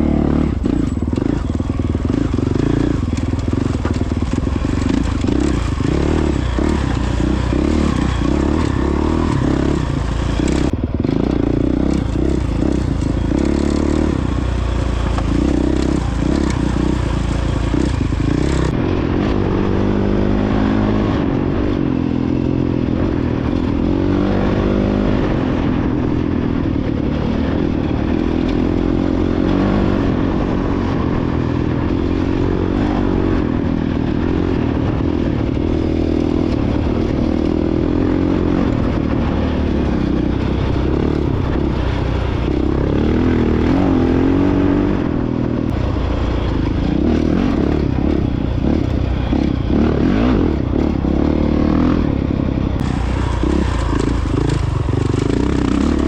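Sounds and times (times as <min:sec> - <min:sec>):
bike rattling and scraping: 0:00.0 - 0:56.0
motorcycle engine revving: 0:00.0 - 0:56.0.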